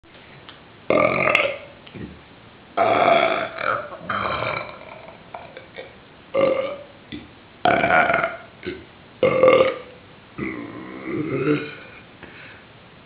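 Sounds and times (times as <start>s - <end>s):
person burping: 0.9s - 1.7s, 2.8s - 6.9s, 7.7s - 12.0s.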